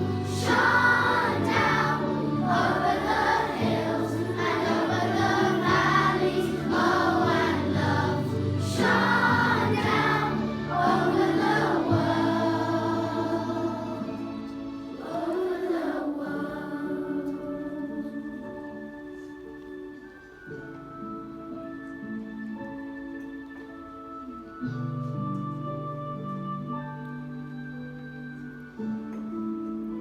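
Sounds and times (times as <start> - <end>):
children's choir singing: 0.0 - 19.3.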